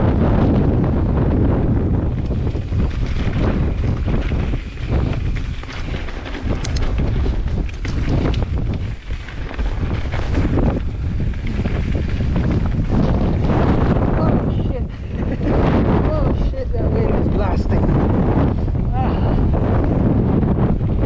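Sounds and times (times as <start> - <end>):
wind buffeting microphone: 0.0 - 21.0
scattered clicks: 5.3 - 8.9.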